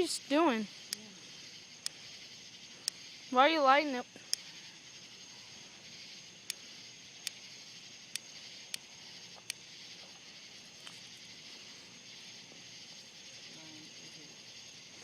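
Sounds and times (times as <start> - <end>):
crickets chirping: 0.0 - 15.0.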